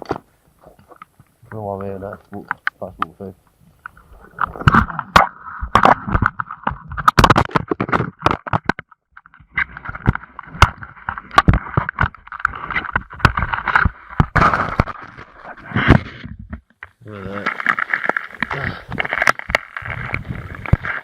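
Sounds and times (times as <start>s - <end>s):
knocks and scrapes on ice: 17.2s - 21.0s.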